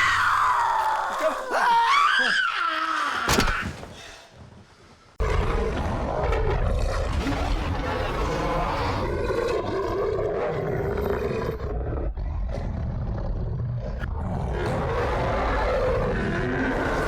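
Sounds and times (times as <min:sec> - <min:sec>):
creature growling and snarling: 0:05.2 - 0:17.0.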